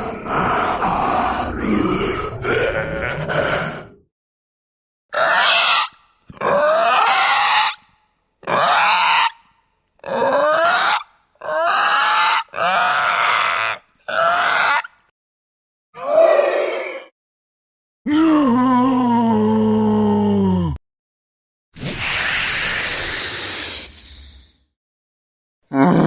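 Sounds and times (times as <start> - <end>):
zombie growling groans: 0.0 - 4.1, 18.1 - 20.8.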